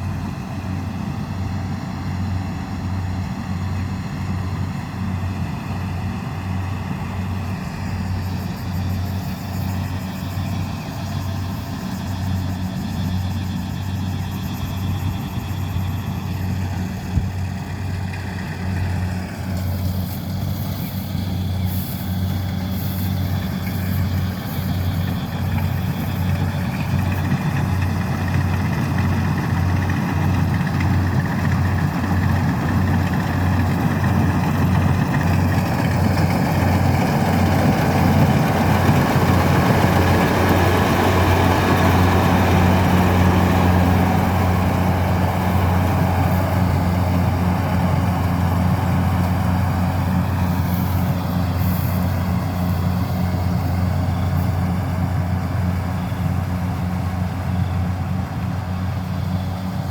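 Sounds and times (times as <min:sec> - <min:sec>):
combine harvester engine running: 0:00.0 - 0:59.9.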